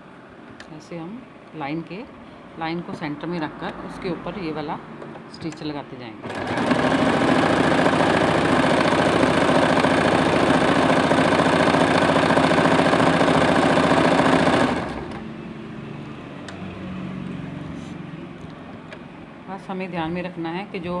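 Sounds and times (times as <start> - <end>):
sewing machine running fast: 6.2 - 15.2.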